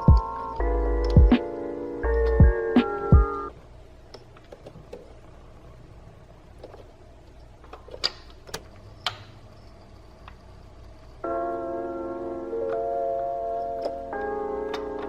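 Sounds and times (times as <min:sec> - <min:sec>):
low steady hum: 0:00.0 - 0:15.0
hands clicking and tapping parts: 0:06.6 - 0:09.4.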